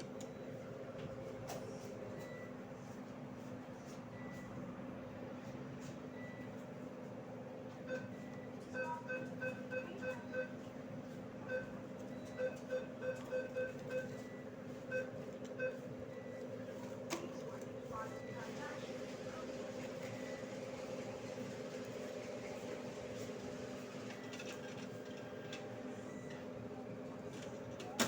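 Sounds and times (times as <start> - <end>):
keypad beeps: 0.0 - 1.1, 7.8 - 18.8, 20.0 - 20.6.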